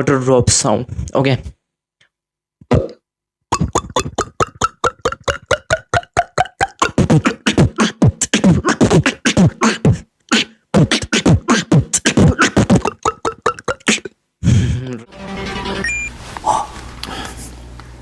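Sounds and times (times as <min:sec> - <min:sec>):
human beatboxing: 0:02.6 - 0:15.1.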